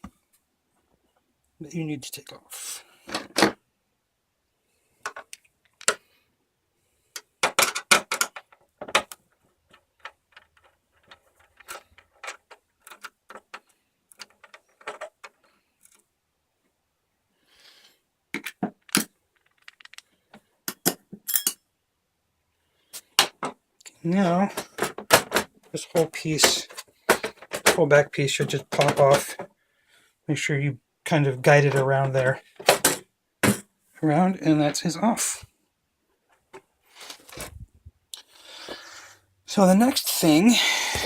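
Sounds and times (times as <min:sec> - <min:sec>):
loose parts handled: 0:07.1 - 0:16.1, 0:18.3 - 0:21.6, 0:24.5 - 0:27.8.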